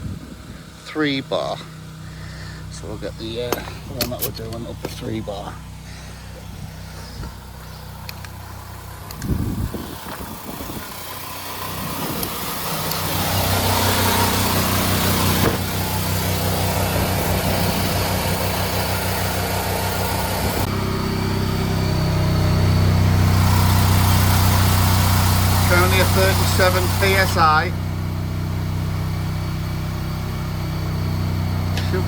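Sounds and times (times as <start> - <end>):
low machine hum: 0.0 - 32.0
air hissing into tyre: 9.2 - 20.7.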